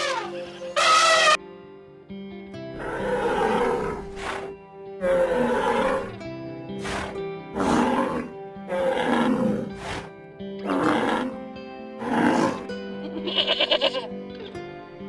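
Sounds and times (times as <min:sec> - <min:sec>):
background music: 0:00.0 - 0:15.0
big cat roaring: 0:02.7 - 0:06.2, 0:06.8 - 0:11.4, 0:12.0 - 0:12.7.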